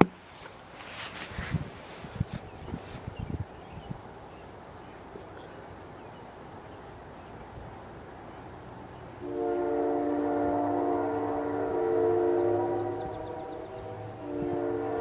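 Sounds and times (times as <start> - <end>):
locomotive air horn chord: 9.2 - 15.0.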